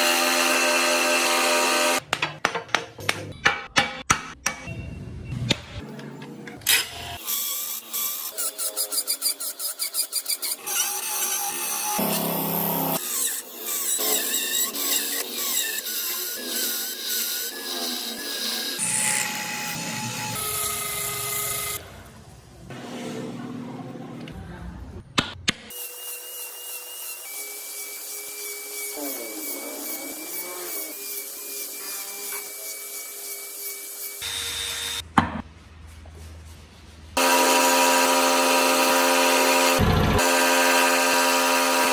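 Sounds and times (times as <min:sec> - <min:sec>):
power tool cutting wood: 0:00.0 - 0:02.0, 0:06.8 - 0:21.8, 0:25.7 - 0:35.0, 0:37.2 - 0:41.9.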